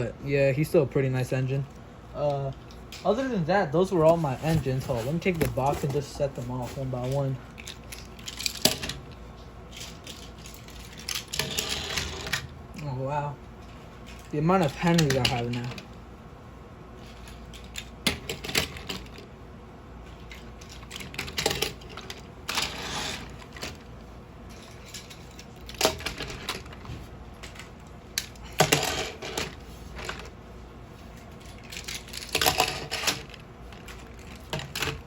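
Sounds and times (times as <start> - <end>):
plastic toys clicking and clattering: 7.0 - 12.5, 14.0 - 15.9, 17.0 - 19.3, 20.2 - 23.9, 24.5 - 26.8, 27.4 - 30.3, 31.4 - 35.0.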